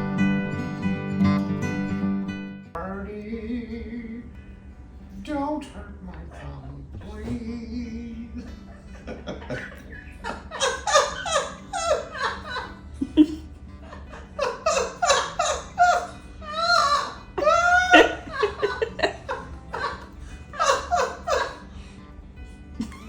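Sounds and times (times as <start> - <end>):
man laughing: 8.3 - 21.7, 22.8 - 23.0
parrot laughing: 8.4 - 21.8, 22.8 - 23.0.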